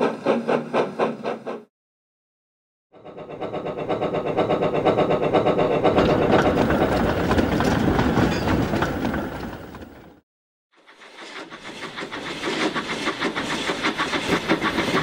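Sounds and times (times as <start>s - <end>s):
train running beat: 11.1s - 15.0s.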